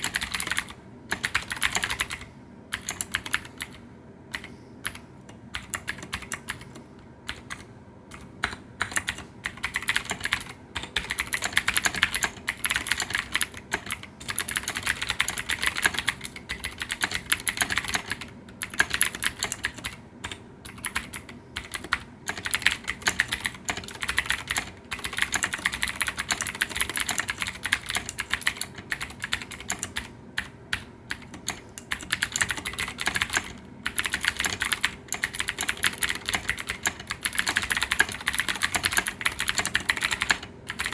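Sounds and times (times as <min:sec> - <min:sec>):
clicky mechanical keyboard typing: 0:00.0 - 0:40.9.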